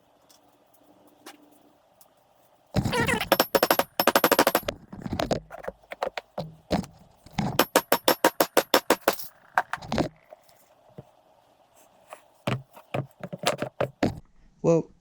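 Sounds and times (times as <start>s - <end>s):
impact tool hammering: 2.8s - 4.7s, 7.6s - 9.3s.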